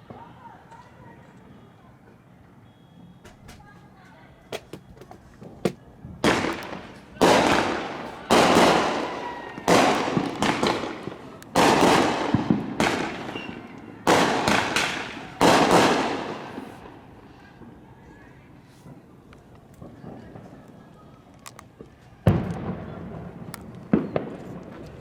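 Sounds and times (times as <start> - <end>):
fireworks bangs: 4.5 - 17.8, 18.8 - 25.0.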